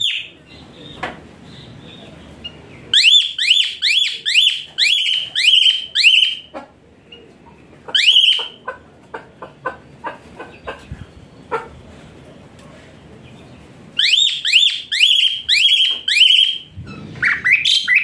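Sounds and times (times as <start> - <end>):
bird whistled song notes: 17.2 - 18.0.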